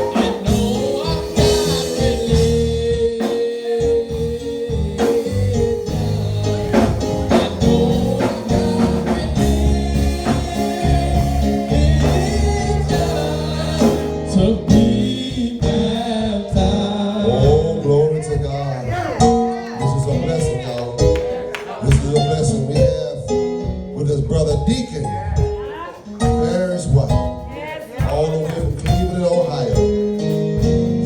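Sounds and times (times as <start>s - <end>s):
sustained bass notes: 0.0s - 3.2s, 3.8s - 21.1s
gospel singing: 0.0s - 30.2s
drum beats: 0.0s - 31.0s.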